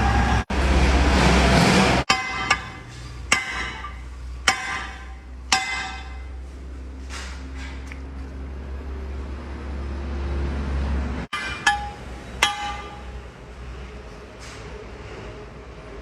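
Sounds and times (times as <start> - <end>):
hammer clinking on steel: 2.1 - 6.4, 11.3 - 13.4.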